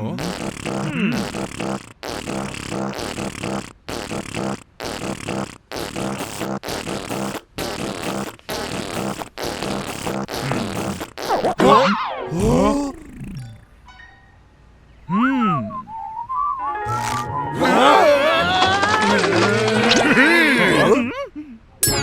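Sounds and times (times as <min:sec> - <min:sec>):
beatboxing: 0:00.0 - 0:11.8, 0:16.9 - 0:21.0.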